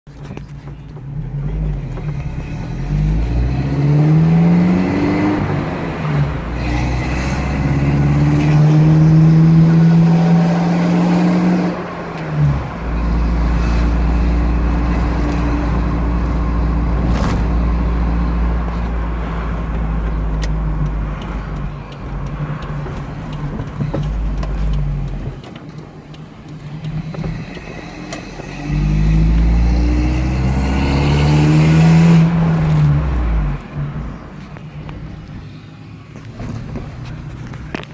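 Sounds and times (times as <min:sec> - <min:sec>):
pickup truck engine revving: 0:01.2 - 0:25.2, 0:26.8 - 0:34.2.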